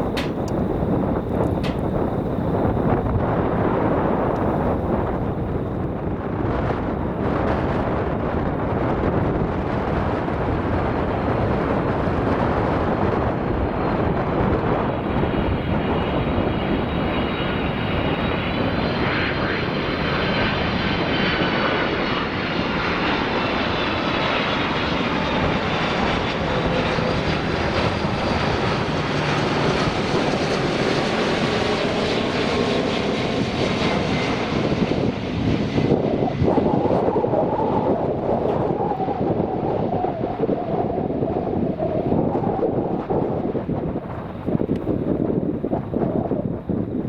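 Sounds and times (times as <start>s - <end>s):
jet engines roaring: 0.0s - 47.0s.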